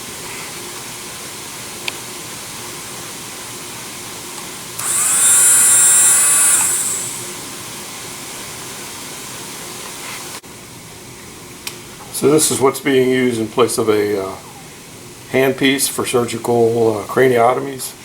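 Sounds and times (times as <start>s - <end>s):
dental drill whine: 4.8s - 7.4s.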